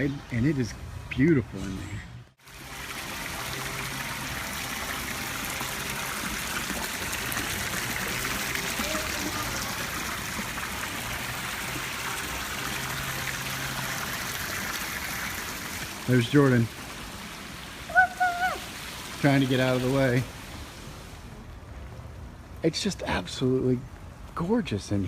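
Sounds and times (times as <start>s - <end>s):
running water splashing: 2.4s - 21.4s.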